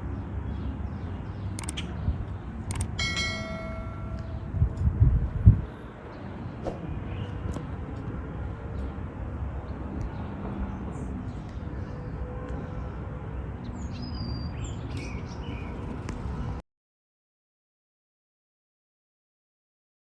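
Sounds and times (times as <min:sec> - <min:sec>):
low outdoor rumble: 0:00.0 - 0:13.6.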